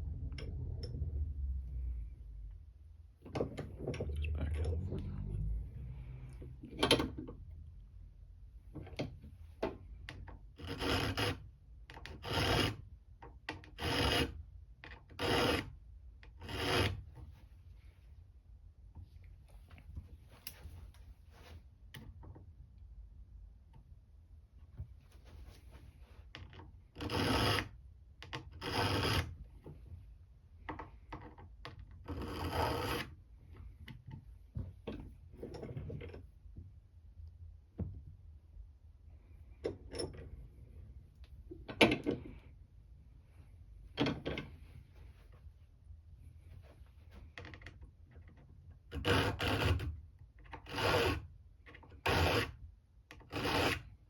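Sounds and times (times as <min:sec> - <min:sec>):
hand file rasping on steel: 0:10.6 - 0:11.4, 0:12.1 - 0:12.8, 0:15.2 - 0:15.7, 0:16.4 - 0:17.0, 0:27.0 - 0:27.7, 0:32.1 - 0:33.1, 0:49.0 - 0:49.9, 0:50.7 - 0:51.2, 0:52.0 - 0:52.6, 0:53.2 - 0:53.9.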